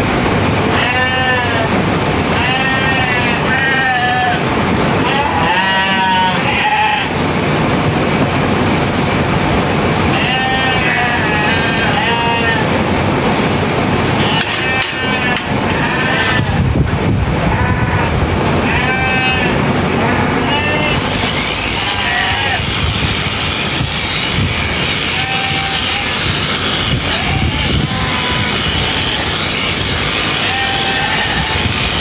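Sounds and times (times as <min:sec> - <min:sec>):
steady noisy background: 0:00.0 - 0:32.0
sheep bleating: 0:00.7 - 0:01.7, 0:02.4 - 0:04.4, 0:05.0 - 0:07.1, 0:10.1 - 0:12.7, 0:14.2 - 0:16.6, 0:17.5 - 0:32.0.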